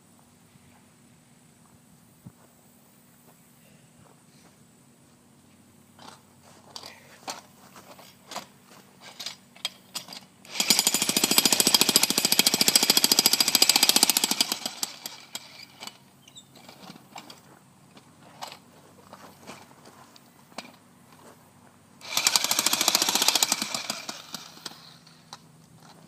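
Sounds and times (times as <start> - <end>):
jackhammer hammering concrete: 10.5 - 15.7, 22.0 - 25.0.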